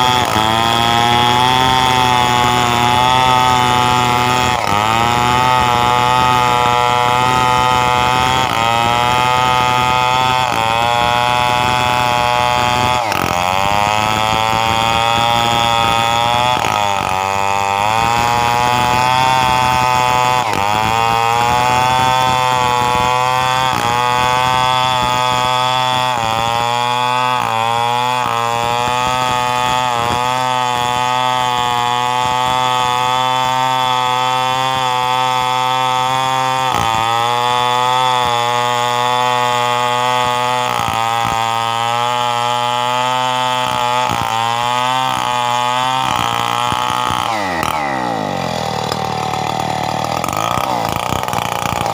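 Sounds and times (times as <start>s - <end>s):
chainsaw cutting wood: 0.0s - 51.9s.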